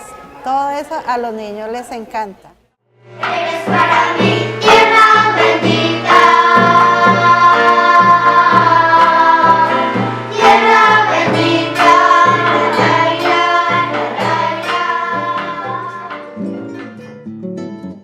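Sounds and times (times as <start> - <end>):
group singing with instruments: 3.1 - 16.8.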